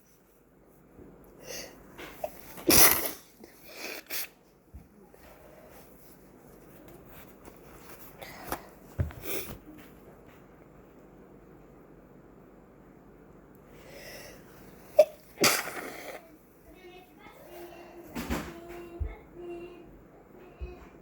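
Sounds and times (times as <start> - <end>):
person sneezing: 2.7 - 4.3, 15.0 - 16.2.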